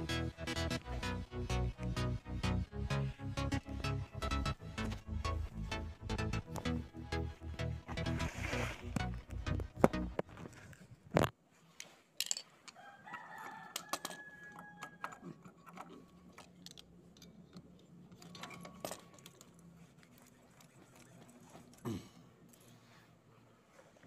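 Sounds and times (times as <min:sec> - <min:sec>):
small parts clicking and clattering: 0:10.5 - 0:12.8, 0:13.7 - 0:21.8.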